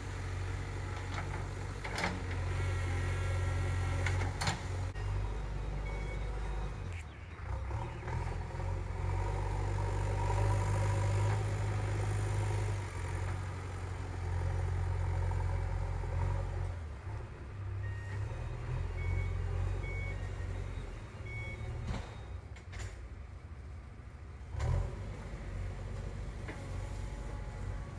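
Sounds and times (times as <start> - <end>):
diesel engine running: 0.0 - 27.9
reversing alarm beeping: 5.0 - 8.0, 17.8 - 22.4.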